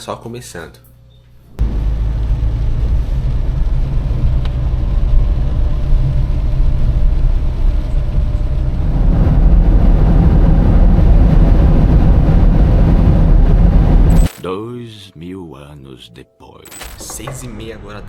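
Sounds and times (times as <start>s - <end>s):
car road and engine rumble: 1.5s - 14.3s.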